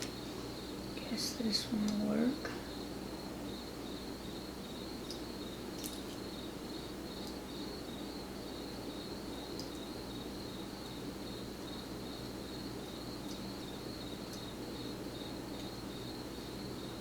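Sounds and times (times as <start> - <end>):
cricket trilling: 0.0 - 17.0
faint light clicks: 9.6 - 9.9.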